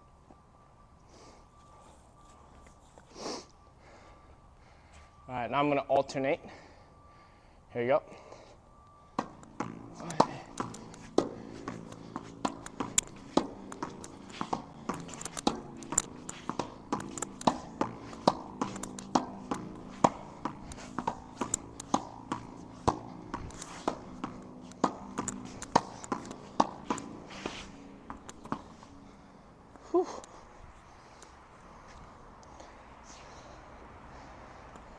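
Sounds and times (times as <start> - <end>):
tennis ball hitting racket and wall: 9.2 - 29.1.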